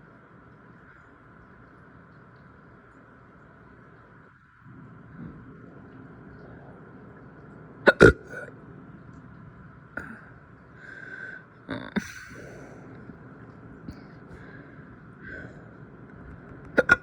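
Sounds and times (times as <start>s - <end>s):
person hiccuping: 7.9s - 8.5s, 16.8s - 17.0s.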